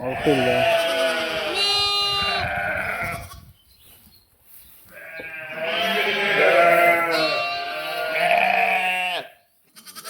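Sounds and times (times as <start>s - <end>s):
sheep and lambs bleating: 0.0s - 3.6s, 4.9s - 10.0s.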